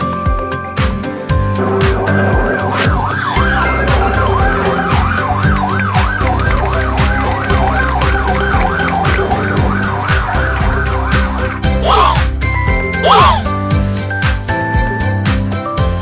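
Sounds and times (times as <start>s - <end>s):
music with a steady beat: 0.0s - 16.0s
electronic siren warbling: 1.6s - 12.3s.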